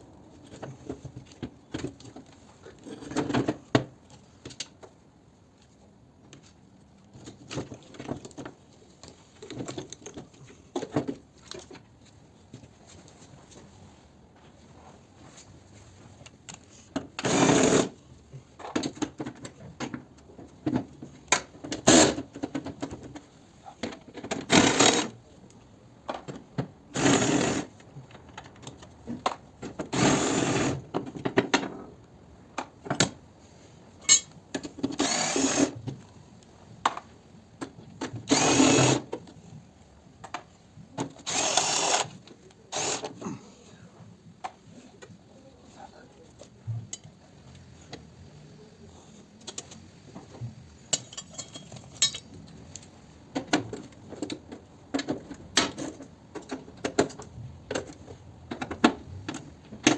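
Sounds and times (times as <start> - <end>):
handheld power tool bursts: 24.5 - 25.1, 35.0 - 35.7, 38.3 - 39.0, 41.2 - 43.2.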